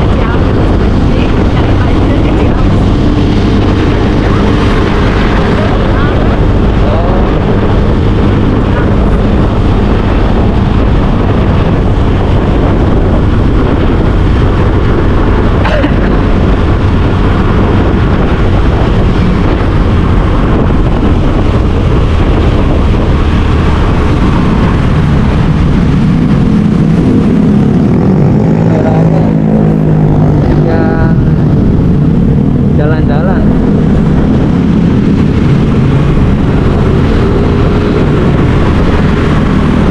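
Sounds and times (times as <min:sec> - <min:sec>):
vehicle engine and road noise: 0:00.0 - 0:39.9
wind on microphone: 0:00.0 - 0:39.9.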